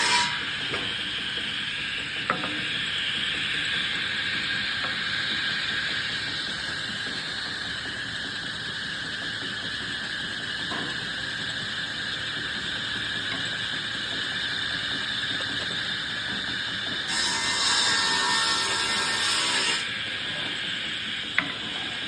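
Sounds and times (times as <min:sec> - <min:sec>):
woodworking machinery whining: 0:09.3 - 0:22.0.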